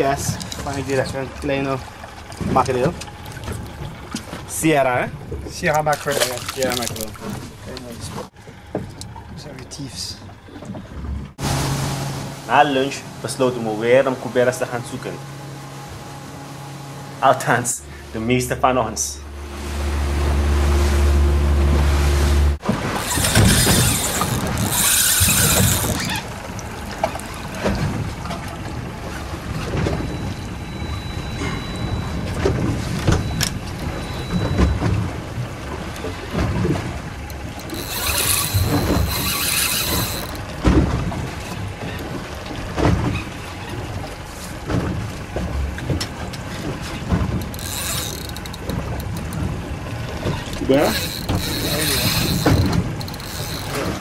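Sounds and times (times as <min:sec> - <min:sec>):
water splashing: 0:00.0 - 0:10.8, 0:11.4 - 0:54.0
boat motor humming: 0:00.0 - 0:54.0
fishing reel ratcheting buzz: 0:23.0 - 0:26.3, 0:37.2 - 0:40.4, 0:47.4 - 0:49.4, 0:50.5 - 0:54.0.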